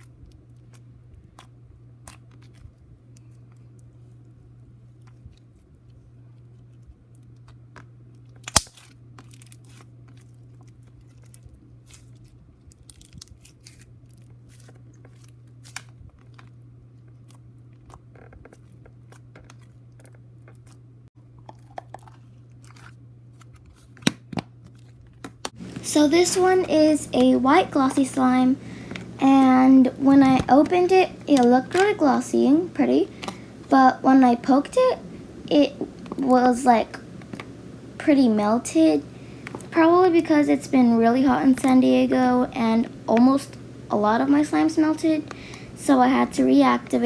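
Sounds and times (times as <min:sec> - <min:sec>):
sticky crackles and clicks: 0:07.4 - 0:20.8, 0:21.6 - 0:47.0
hands squishing slime: 0:25.6 - 0:47.0
steady low hum: 0:25.6 - 0:47.0.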